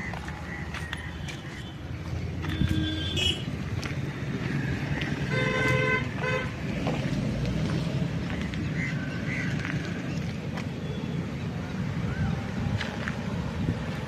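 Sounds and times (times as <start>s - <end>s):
low traffic rumble: 0.0s - 14.0s
vehicle horn tooting: 2.5s - 3.5s, 5.3s - 6.5s.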